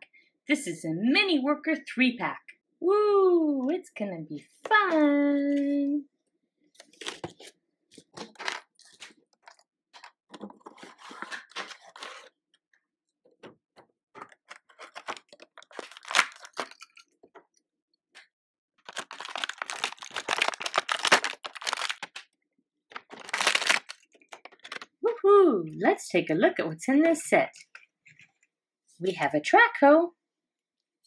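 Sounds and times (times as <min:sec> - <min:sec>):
packaging tearing and crinkling: 0:14.2 - 0:17.0, 0:18.8 - 0:22.2, 0:22.9 - 0:24.9.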